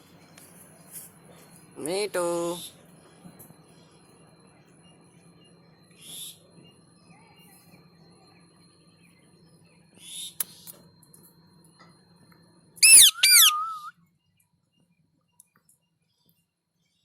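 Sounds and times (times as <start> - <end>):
parrot sharp call: 12.8 - 13.9.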